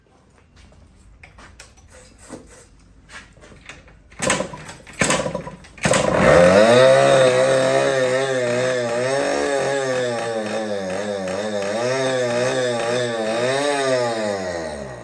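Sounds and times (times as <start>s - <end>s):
scooter engine cranking: 3.6s - 15.0s
scooter engine fast idle: 4.3s - 12.0s.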